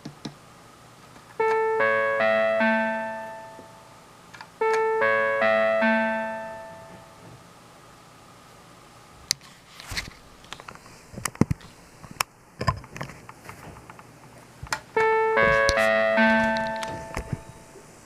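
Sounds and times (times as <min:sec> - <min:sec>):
four-tone electronic chime: 0:01.4 - 0:04.0, 0:04.6 - 0:07.3, 0:15.0 - 0:17.8.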